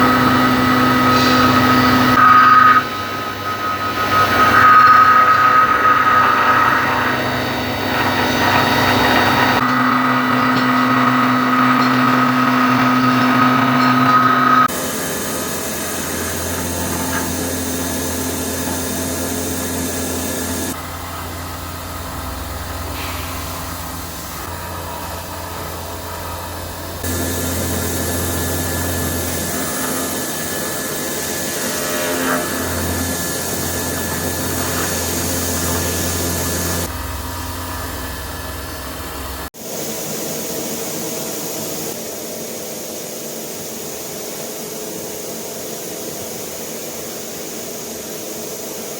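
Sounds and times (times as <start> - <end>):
low hum: 0.0 - 30.5, 32.4 - 39.5
milling machine whine: 0.0 - 48.9.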